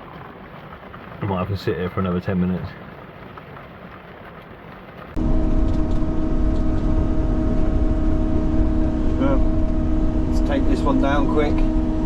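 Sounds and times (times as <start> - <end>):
quiet even rumble: 5.1 - 12.0
steady hum: 5.2 - 12.0.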